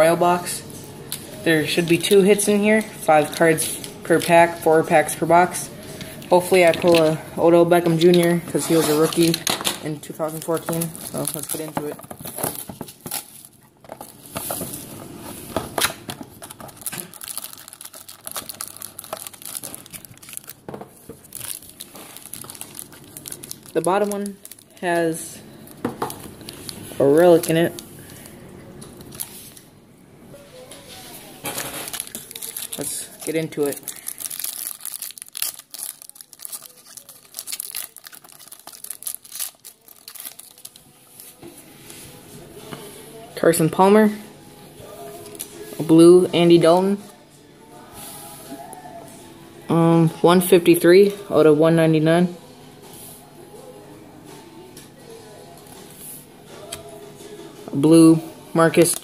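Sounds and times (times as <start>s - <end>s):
packaging tearing and crinkling: 10.3s - 14.8s, 15.8s - 20.6s, 21.2s - 24.8s, 31.5s - 40.9s.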